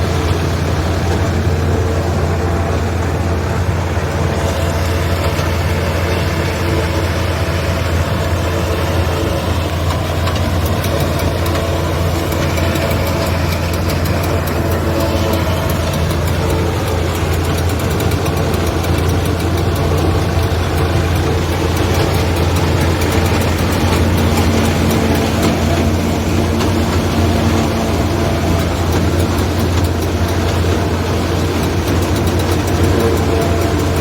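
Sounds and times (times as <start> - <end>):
heavy machinery engine drone: 0.0 - 34.0.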